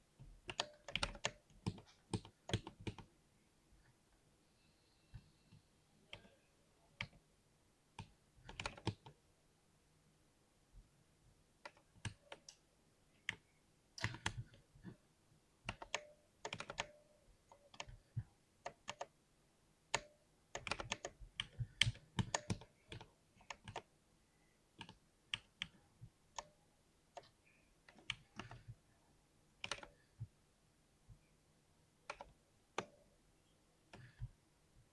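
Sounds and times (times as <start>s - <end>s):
clicky keyboard typing: 0.5s - 3.1s, 8.0s - 9.2s, 14.0s - 14.6s, 15.7s - 19.1s, 19.9s - 23.9s, 24.8s - 26.5s, 29.6s - 30.0s, 32.0s - 33.0s, 33.9s - 34.4s.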